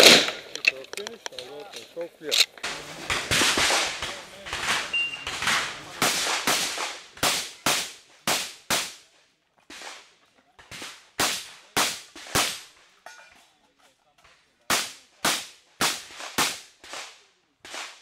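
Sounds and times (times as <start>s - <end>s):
shotgun shots with echo: 0.0s - 0.6s, 2.6s - 9.1s, 10.7s - 12.8s, 14.7s - 18.0s.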